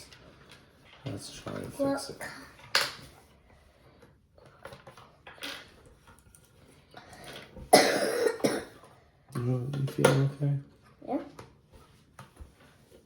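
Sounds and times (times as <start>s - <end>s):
person coughing: 7.7s - 8.8s.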